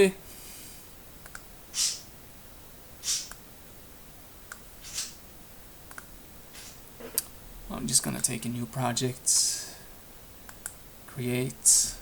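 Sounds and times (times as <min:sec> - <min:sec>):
computer mouse clicks: 0:01.2 - 0:02.0, 0:03.0 - 0:03.4, 0:04.5 - 0:05.2, 0:05.9 - 0:07.3, 0:10.4 - 0:10.8
short hissy puffs: 0:01.8 - 0:02.1, 0:03.0 - 0:03.3, 0:04.8 - 0:05.2, 0:06.5 - 0:06.9.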